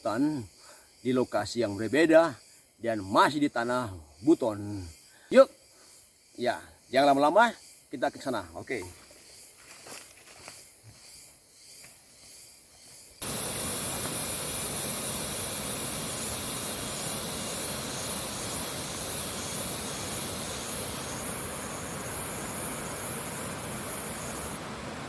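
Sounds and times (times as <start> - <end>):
waterfall rushing: 20.0 - 25.0.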